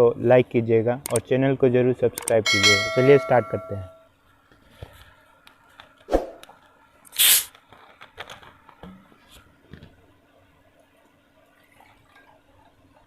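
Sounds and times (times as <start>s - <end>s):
tableware clicks and taps: 2.5s - 4.0s
loud hissing or tearing: 7.1s - 7.6s.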